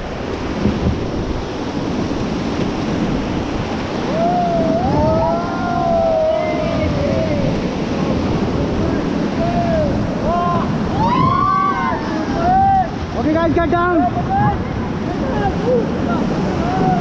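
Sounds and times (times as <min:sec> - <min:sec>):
river rapids roaring: 0:00.0 - 0:17.0
wind buffeting microphone: 0:00.0 - 0:17.0
people whooping: 0:04.0 - 0:07.6, 0:09.4 - 0:12.9, 0:16.5 - 0:17.0.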